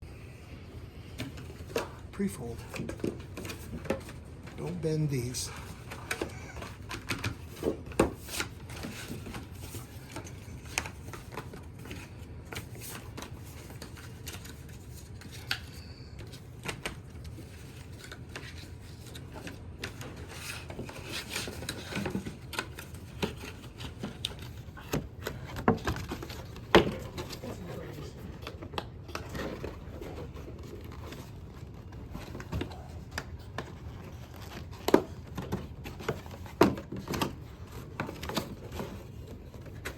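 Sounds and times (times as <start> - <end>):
cardboard rustling and clicking: 1.2 - 39.9.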